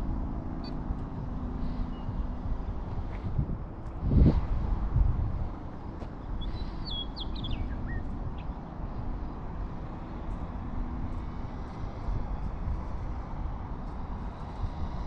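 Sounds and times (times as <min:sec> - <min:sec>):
wind buffeting microphone: 0:00.0 - 0:15.0
bird chirping: 0:06.4 - 0:08.5.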